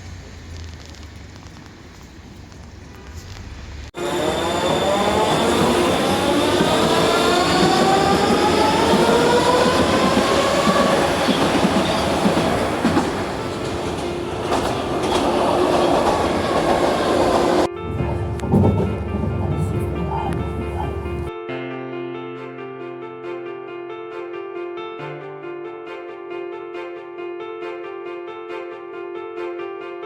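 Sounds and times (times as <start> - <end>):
train wheels on rails: 0.0 - 21.3
electric train motor whine: 4.0 - 19.5.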